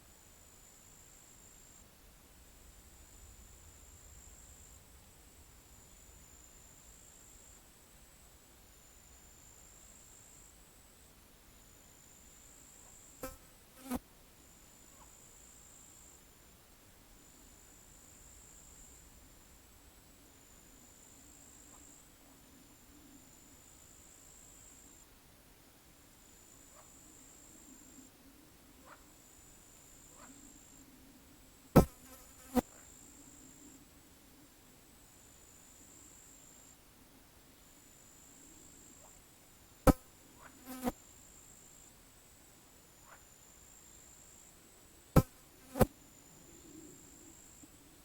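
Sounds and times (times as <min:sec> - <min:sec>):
faint high-pitched whine: 0:00.0 - 0:48.0
insect buzzing close by: 0:13.0 - 0:14.0, 0:31.8 - 0:32.9, 0:39.9 - 0:41.0, 0:45.1 - 0:46.0.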